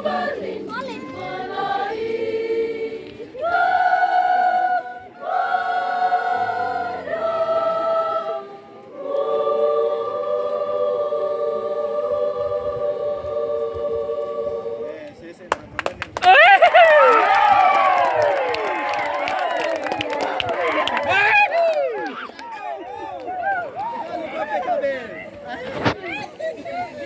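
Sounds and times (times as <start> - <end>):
women's choir singing a hymn: 0.0 - 15.1.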